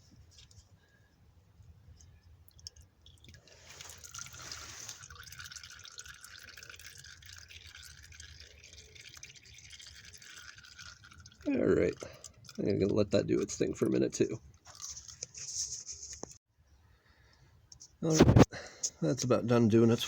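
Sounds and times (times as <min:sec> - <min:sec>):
oil draining into a pan: 0:02.5 - 0:13.6.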